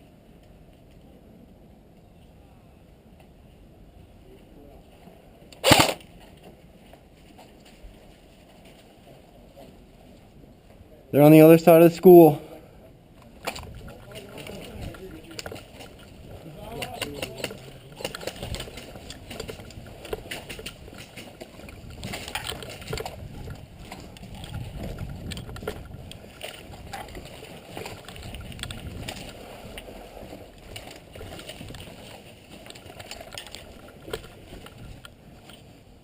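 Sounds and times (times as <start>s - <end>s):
rustling and rumbling of gear: 4.3s - 10.9s, 13.1s - 36.0s.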